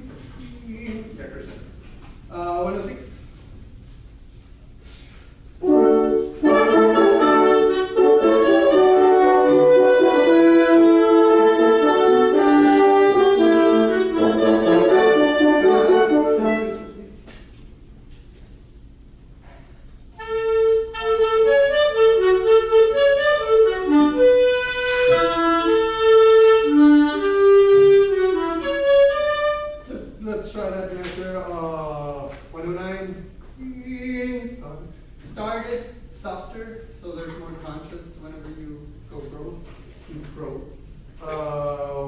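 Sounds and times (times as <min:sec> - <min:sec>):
brass band holding notes: 0:05.6 - 0:17.2, 0:20.1 - 0:30.0.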